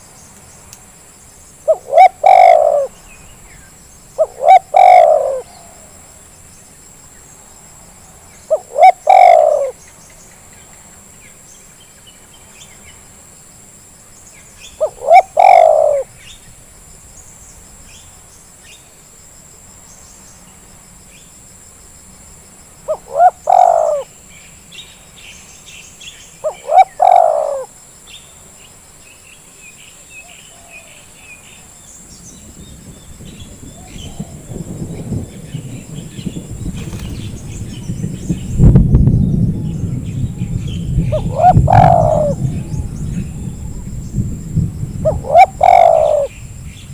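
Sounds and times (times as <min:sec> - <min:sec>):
dove cooing: 0:01.6 - 0:03.0, 0:04.2 - 0:05.9, 0:08.5 - 0:09.8, 0:14.8 - 0:16.1, 0:22.9 - 0:24.1, 0:26.4 - 0:27.7, 0:41.1 - 0:43.8, 0:45.0 - 0:46.4.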